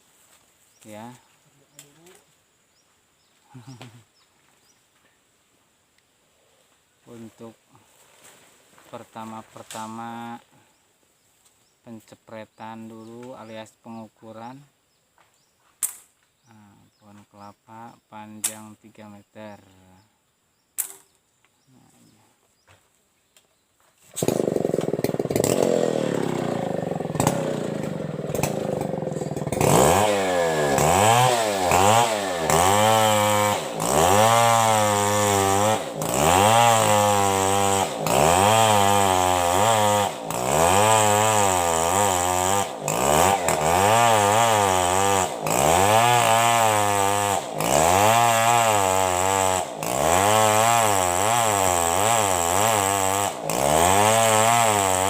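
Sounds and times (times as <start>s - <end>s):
chainsaw cutting wood: 9.0s - 10.4s, 24.0s - 55.0s.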